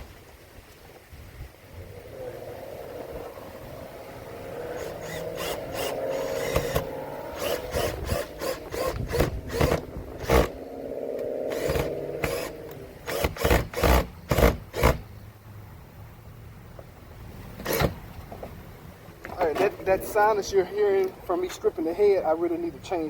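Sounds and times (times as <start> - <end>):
power drill motor whining: 4.8 - 10.6, 11.5 - 15.0.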